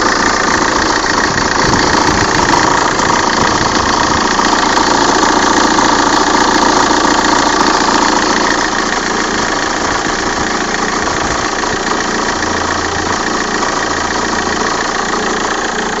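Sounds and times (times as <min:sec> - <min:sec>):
diesel engine idling: 0:00.0 - 0:16.0.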